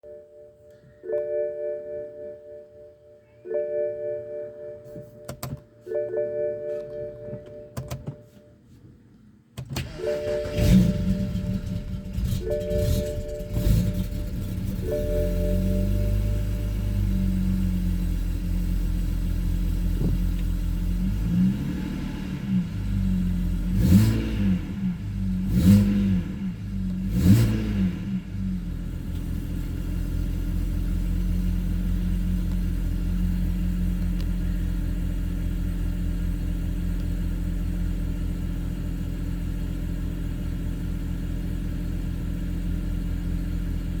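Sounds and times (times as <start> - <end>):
car engine idling and revving: 9.6 - 44.0.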